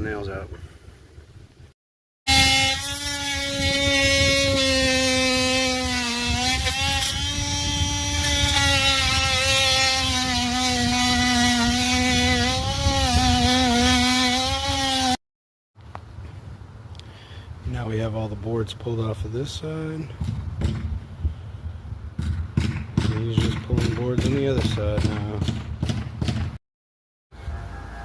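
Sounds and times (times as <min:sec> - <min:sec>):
small engine running: 0:02.3 - 0:15.2.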